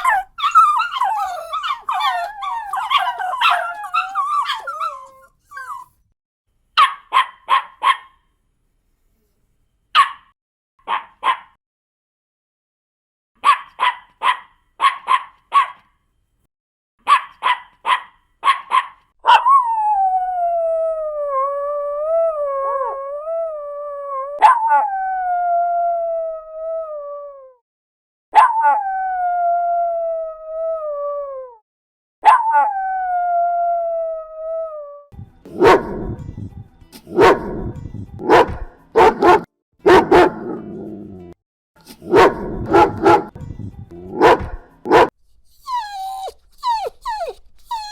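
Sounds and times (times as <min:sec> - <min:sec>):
dog howling: 0:00.0 - 0:05.9, 0:19.3 - 0:27.6, 0:45.6 - 0:47.9
high-pitched dog yaps: 0:00.0 - 0:05.9, 0:06.8 - 0:08.2, 0:10.0 - 0:11.6, 0:13.4 - 0:15.9, 0:17.0 - 0:19.7, 0:24.3 - 0:24.9, 0:28.3 - 0:28.8, 0:32.2 - 0:32.7, 0:38.3 - 0:40.4, 0:42.1 - 0:43.3, 0:44.2 - 0:47.9
deep rough dog barks: 0:35.5 - 0:36.2, 0:37.0 - 0:40.9, 0:42.0 - 0:43.4, 0:44.1 - 0:45.1.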